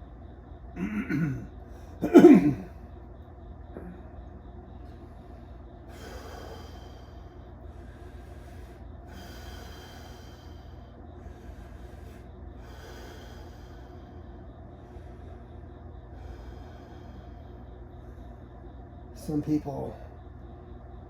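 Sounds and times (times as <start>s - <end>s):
steady low hum: 0.0s - 21.0s
man breathing through nose: 5.2s - 18.4s.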